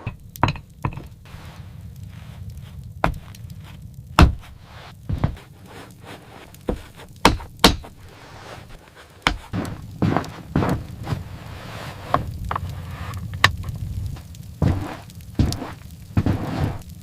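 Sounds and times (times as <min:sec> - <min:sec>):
sharp knocks and thuds: 0:00.0 - 0:01.2, 0:03.0 - 0:03.3, 0:04.2 - 0:05.5, 0:06.6 - 0:08.0, 0:09.2 - 0:11.3
low steady hum: 0:00.0 - 0:08.3.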